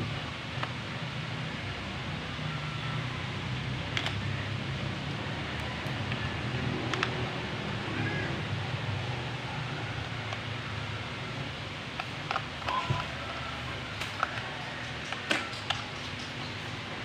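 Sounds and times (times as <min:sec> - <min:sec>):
small tools clicking: 0:14.0 - 0:16.6.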